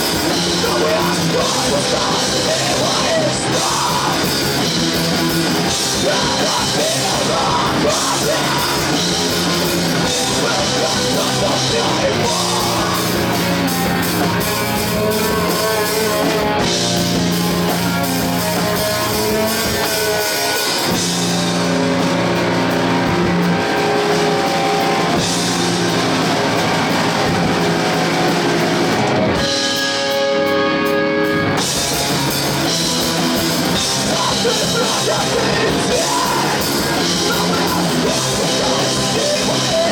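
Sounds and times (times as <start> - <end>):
drum kit: 0.0 - 39.9
electric guitars: 0.0 - 39.9.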